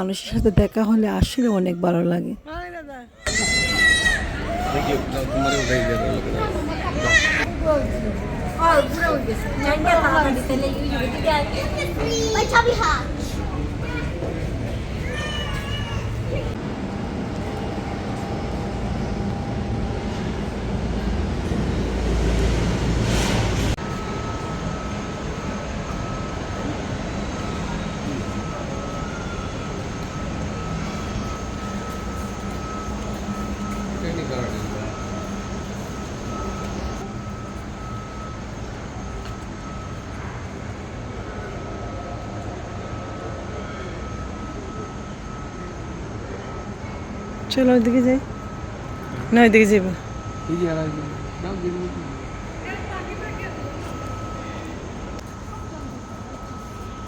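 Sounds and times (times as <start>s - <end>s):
city rumble: 0.0s - 57.0s
thin steady high tone: 3.3s - 21.8s, 23.8s - 57.0s
passing vehicles rumbling: 19.4s - 26.5s.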